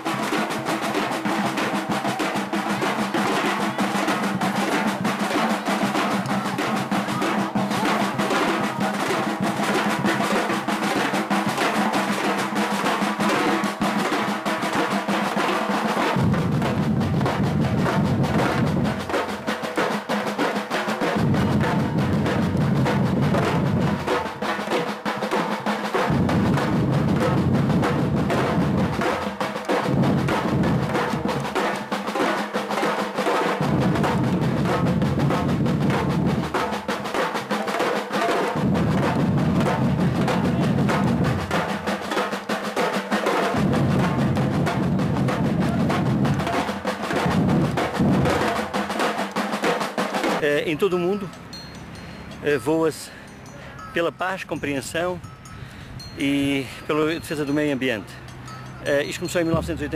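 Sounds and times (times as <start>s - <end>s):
percussion group drumming: 0.0s - 59.9s
deep bass drum: 16.2s - 19.1s, 21.2s - 24.3s, 26.1s - 29.2s, 29.8s - 31.4s, 33.6s - 36.8s, 38.6s - 41.7s, 43.6s - 48.6s.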